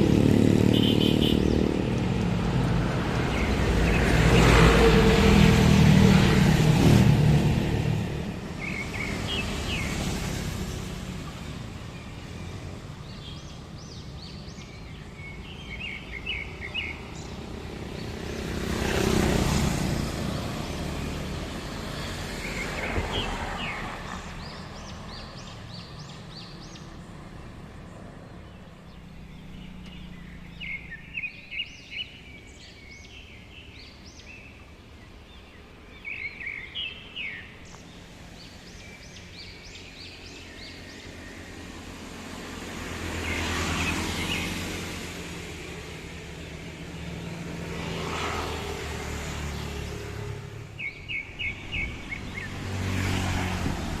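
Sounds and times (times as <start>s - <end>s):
birds chirping: 0.0s - 54.0s
low traffic hum: 0.0s - 54.0s
vehicles passing: 0.0s - 54.0s.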